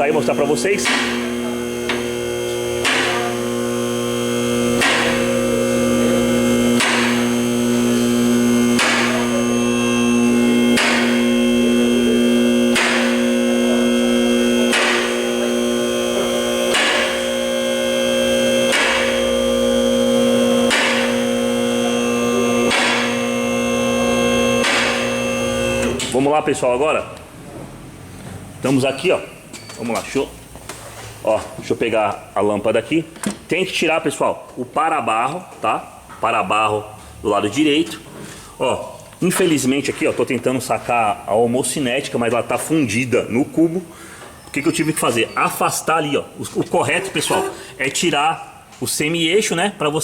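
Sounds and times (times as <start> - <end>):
car lift motor and pump: 0.0 - 49.6.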